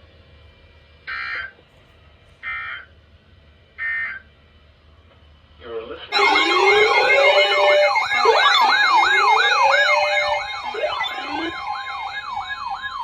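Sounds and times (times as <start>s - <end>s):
electronic siren yelp: 1.1s - 1.5s, 3.8s - 4.2s, 6.1s - 13.0s
siren wails: 6.1s - 13.0s
steady high tone: 6.1s - 13.0s.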